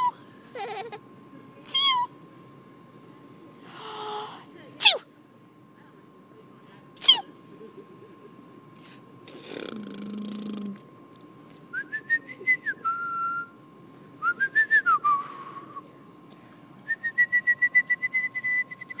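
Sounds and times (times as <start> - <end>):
baby laughing in squealing giggles: 0.0 - 1.0.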